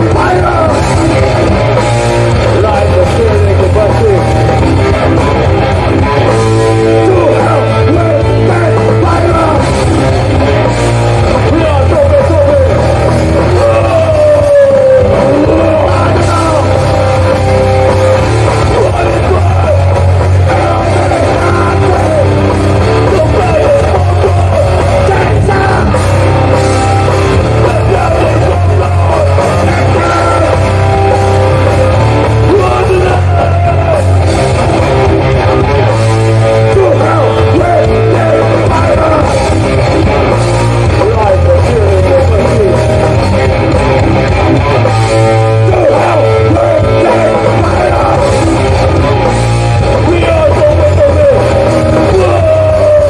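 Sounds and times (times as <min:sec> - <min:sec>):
punk band playing loud: 0:00.0 - 0:53.0
person yelling vocals: 0:13.4 - 0:16.8, 0:32.4 - 0:34.2, 0:50.0 - 0:53.0.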